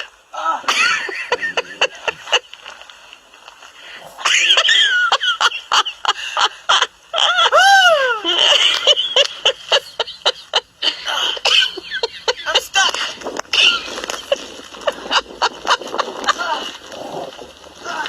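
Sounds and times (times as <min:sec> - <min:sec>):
woman laughing and squealing: 0:00.4 - 0:02.5, 0:04.2 - 0:17.2
woman's high cries: 0:07.2 - 0:08.6.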